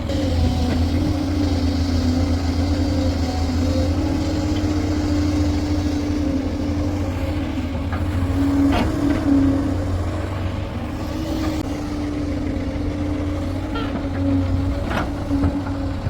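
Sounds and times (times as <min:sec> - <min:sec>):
heavy diesel engine running: 0:00.0 - 0:16.0.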